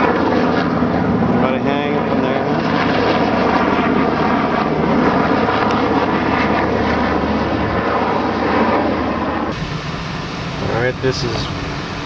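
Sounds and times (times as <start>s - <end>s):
helicopter rotor and engine: 0.0s - 12.0s.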